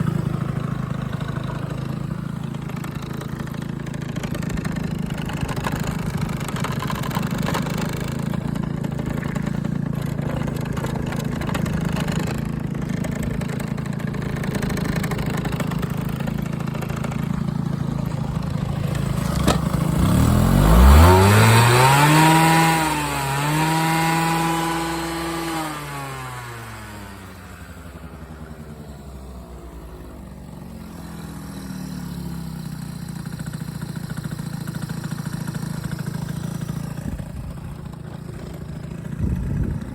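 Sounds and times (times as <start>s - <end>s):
engine idling and revving: 0.0s - 39.9s.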